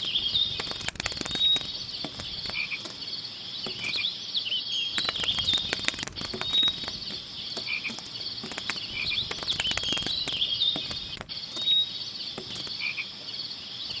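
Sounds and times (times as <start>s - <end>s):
sharp clicks and crackles: 0.0s - 3.0s, 5.0s - 11.8s, 12.4s - 12.8s
crickets trilling: 0.0s - 14.0s
frogs croaking: 0.0s - 14.0s.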